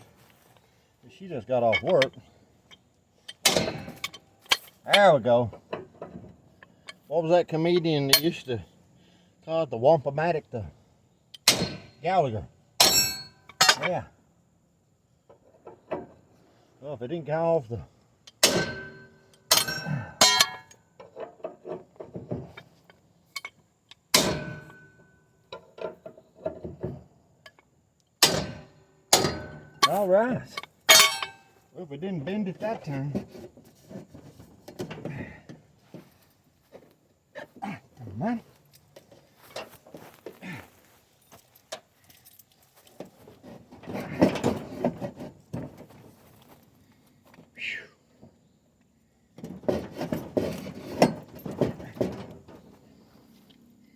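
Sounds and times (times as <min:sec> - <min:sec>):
metal tools clinking: 0:01.5 - 0:07.1, 0:07.7 - 0:08.5, 0:12.8 - 0:14.1, 0:18.3 - 0:26.2, 0:28.4 - 0:31.6, 0:41.1 - 0:44.9
hammer clanging on steel: 0:03.3 - 0:05.2, 0:11.4 - 0:12.0, 0:12.8 - 0:14.0, 0:18.3 - 0:20.8, 0:23.4 - 0:25.1, 0:28.2 - 0:31.5.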